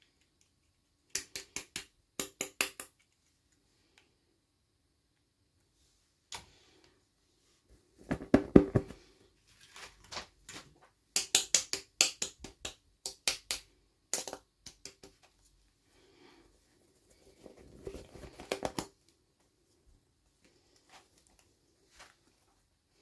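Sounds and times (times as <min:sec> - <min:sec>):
plastic toy pieces knocking: 0:11.2 - 0:15.2.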